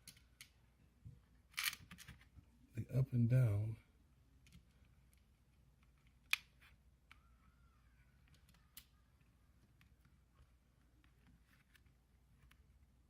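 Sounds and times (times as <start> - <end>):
small parts clicking and tapping: 0.0 - 0.6, 1.5 - 2.3, 8.2 - 12.7.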